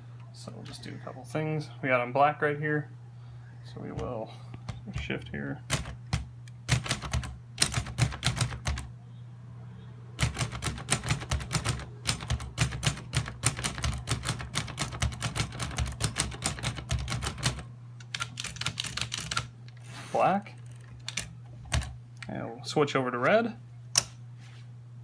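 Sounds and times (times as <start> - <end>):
typewriter typing: 4.0 - 8.9, 10.2 - 19.5, 20.6 - 22.0.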